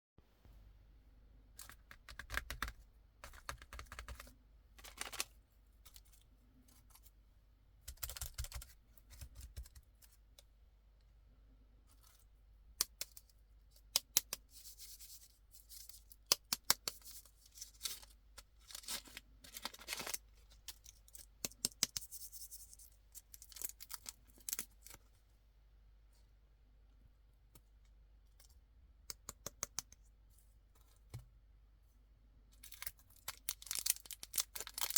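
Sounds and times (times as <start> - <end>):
wrappers crinkling and tearing: 17.2 - 20.9, 32.7 - 34.9.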